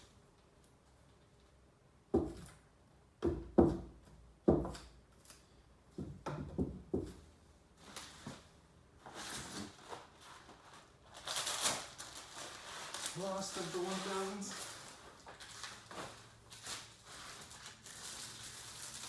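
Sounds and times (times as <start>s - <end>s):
wooden knocks of cricket bats: 3.2s - 4.9s, 5.9s - 7.2s
packaging rustling: 9.0s - 19.0s.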